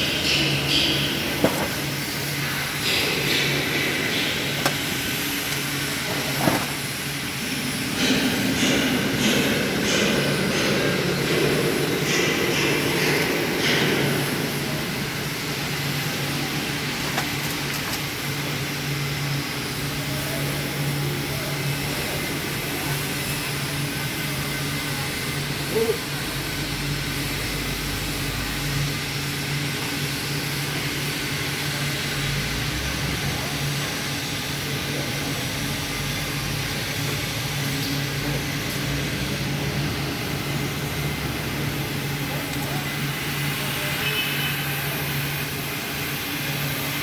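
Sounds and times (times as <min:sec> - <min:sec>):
machine hum: 0:00.0 - 0:20.1
welding arc hiss: 0:00.0 - 0:47.0.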